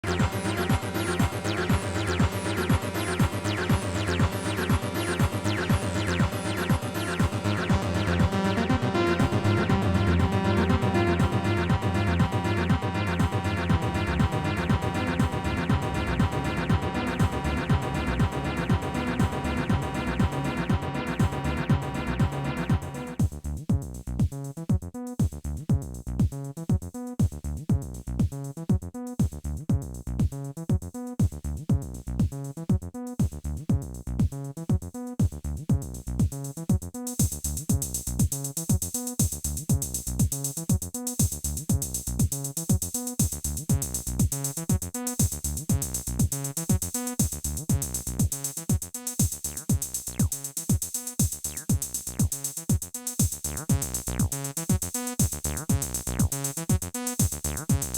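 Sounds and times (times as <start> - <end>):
synth bass line: 0.0 - 23.6, 53.4 - 54.6, 55.3 - 56.6, 57.3 - 57.9
electronic kick drum: 0.0 - 57.9.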